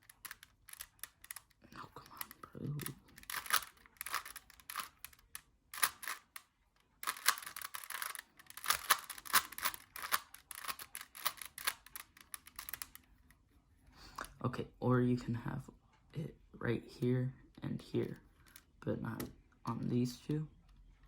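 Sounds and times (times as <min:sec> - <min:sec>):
puzzle cube plastic clicks: 0:00.0 - 0:13.4, 0:18.0 - 0:19.4.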